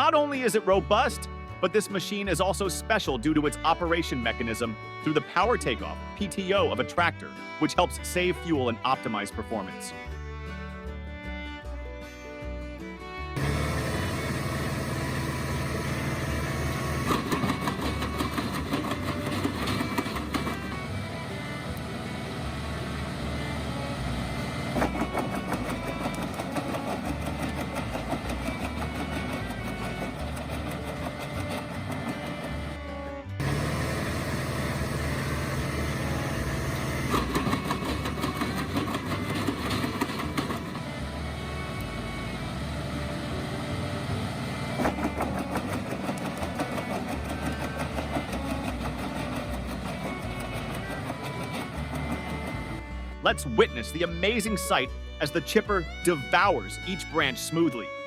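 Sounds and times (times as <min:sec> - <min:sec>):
wood chipper running: 0:00.0 - 0:10.2, 0:12.8 - 0:58.0
rapid rattle of knocks: 0:17.1 - 0:20.8, 0:24.8 - 0:32.8, 0:37.1 - 0:40.8, 0:44.8 - 0:52.8.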